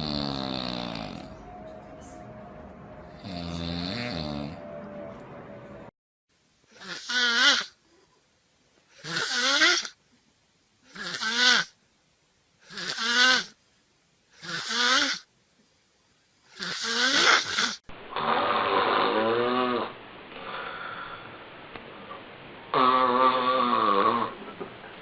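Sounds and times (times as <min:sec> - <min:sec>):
loud rattling snores: 0:00.0 - 0:01.3, 0:03.2 - 0:04.6, 0:09.0 - 0:09.9, 0:10.9 - 0:11.7, 0:12.7 - 0:13.6, 0:14.4 - 0:15.2, 0:16.6 - 0:20.6, 0:22.7 - 0:24.4
breathing noise: 0:20.3 - 0:21.5.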